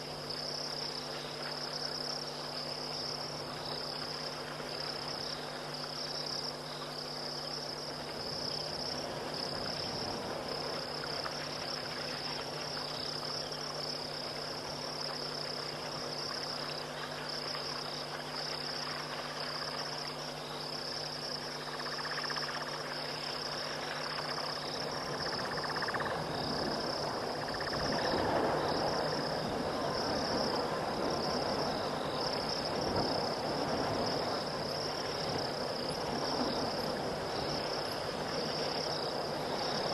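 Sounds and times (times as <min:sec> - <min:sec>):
crickets trilling: 0:00.0 - 0:39.9.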